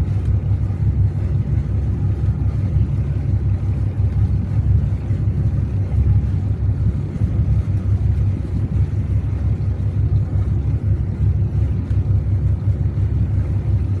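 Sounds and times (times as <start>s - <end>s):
diesel engine rumbling: 0.0s - 14.0s.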